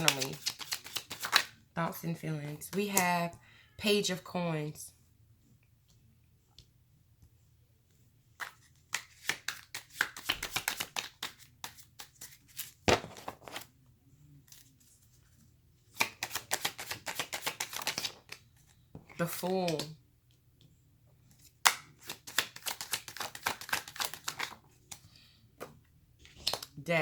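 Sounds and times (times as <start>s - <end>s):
deck of cards snapping: 0.0s - 1.5s, 8.4s - 13.6s, 16.0s - 18.4s, 21.6s - 24.6s
cards being shuffled: 0.0s - 1.6s, 8.4s - 13.7s, 14.5s - 19.9s, 21.3s - 25.0s, 26.2s - 26.8s.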